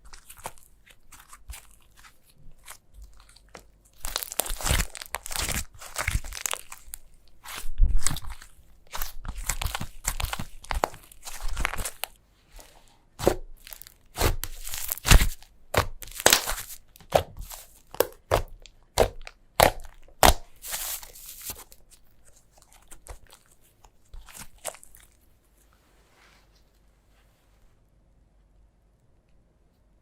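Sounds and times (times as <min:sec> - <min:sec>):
slime crackling pops: 0:13.2 - 0:21.6.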